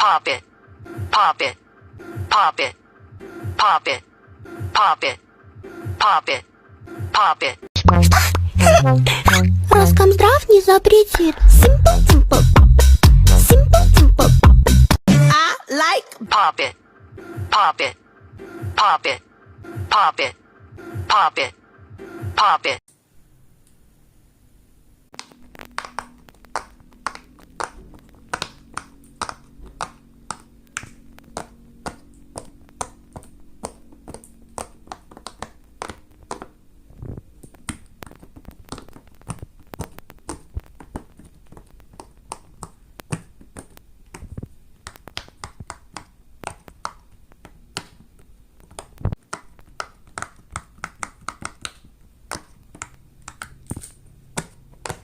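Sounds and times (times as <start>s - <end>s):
fidget toy bubbles popping: 25.2s - 36.5s.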